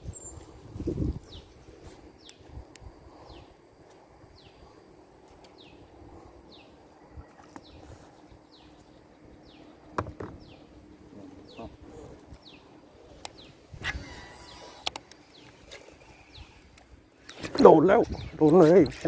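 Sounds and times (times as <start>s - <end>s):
bird calling: 6.4s - 18.9s.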